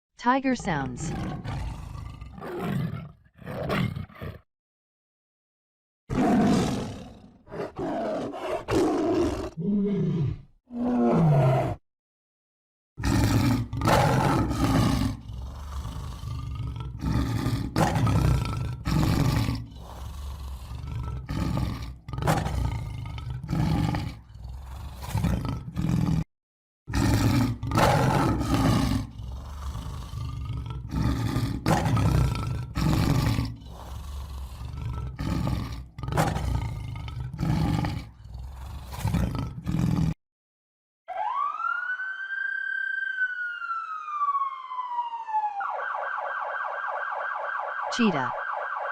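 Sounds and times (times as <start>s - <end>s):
tiger roaring and growling: 0.7s - 4.4s, 6.1s - 11.8s, 13.0s - 26.3s, 26.9s - 40.2s.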